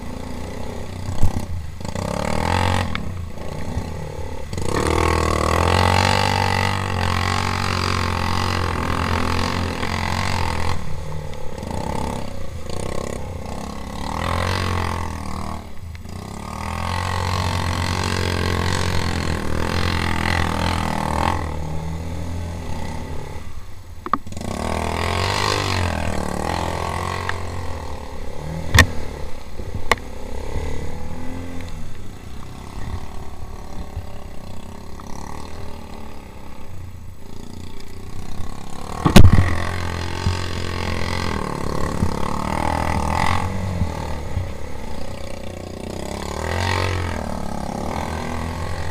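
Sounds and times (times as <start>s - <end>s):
quad bike engine revving: 0.0s - 48.9s.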